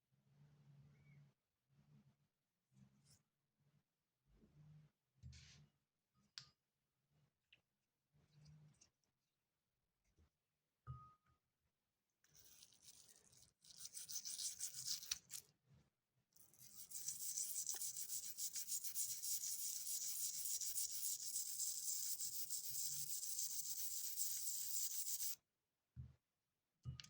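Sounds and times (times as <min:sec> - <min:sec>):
scrubbing a coin surface: 0:12.3 - 0:15.4, 0:16.4 - 0:25.4.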